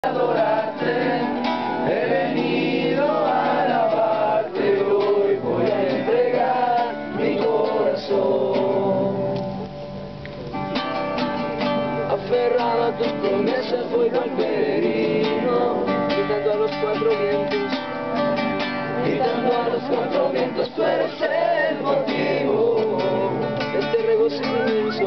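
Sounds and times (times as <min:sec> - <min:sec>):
acoustic guitar strumming: 0:00.0 - 0:25.0
man singing: 0:12.1 - 0:18.2, 0:18.9 - 0:25.0.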